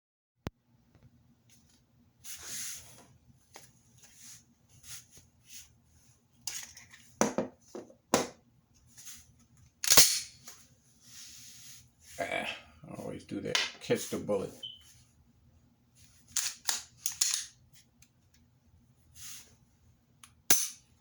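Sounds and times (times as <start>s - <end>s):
pistol mechanical clicks: 9.8s - 10.3s, 16.4s - 17.5s.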